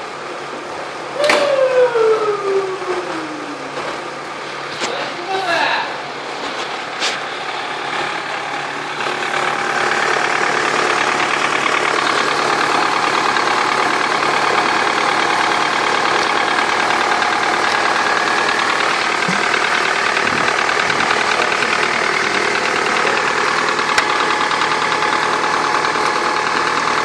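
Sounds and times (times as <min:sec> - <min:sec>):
car engine clattering: 0:06.0 - 0:27.0.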